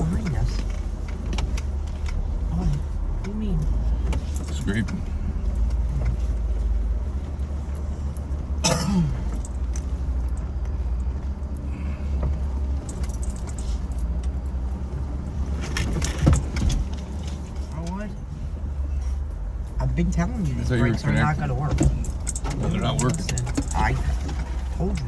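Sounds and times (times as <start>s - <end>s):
low engine rumble: 0.0s - 25.0s
rattling and clinking: 4.0s - 6.6s, 7.4s - 11.2s, 12.6s - 14.4s, 15.5s - 17.8s, 21.7s - 25.0s.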